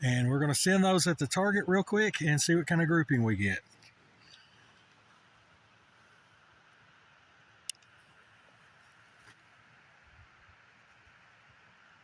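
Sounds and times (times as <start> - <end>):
faint outdoor hiss: 0.0 - 12.0
faint click: 7.6 - 8.0.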